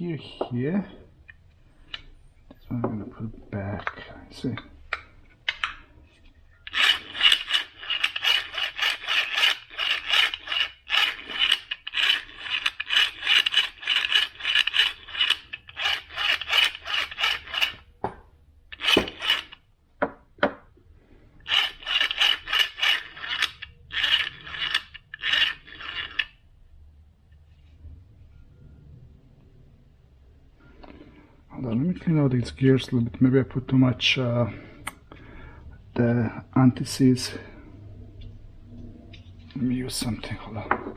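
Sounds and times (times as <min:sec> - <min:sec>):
rapid rasping strokes: 0:06.7 - 0:17.9, 0:21.4 - 0:26.4.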